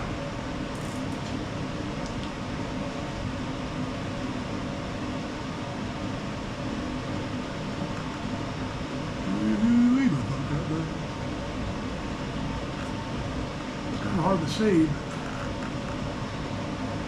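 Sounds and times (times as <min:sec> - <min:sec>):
fan whirring with low hum: 0:00.0 - 0:17.0.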